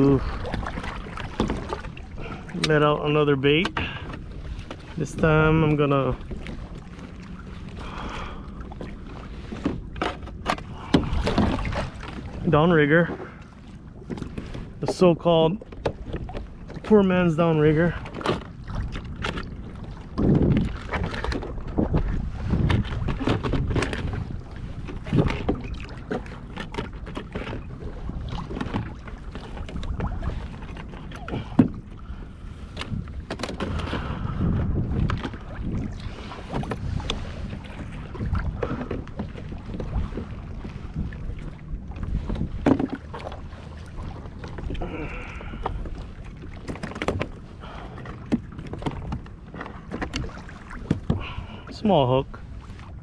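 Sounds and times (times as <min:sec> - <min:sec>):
water sloshing against hull: 0:00.0 - 0:53.0
wind on microphone: 0:10.6 - 0:12.6, 0:16.0 - 0:26.5, 0:27.4 - 0:51.7
fishing gear clicks and knocks: 0:32.8 - 0:34.0, 0:46.6 - 0:47.4.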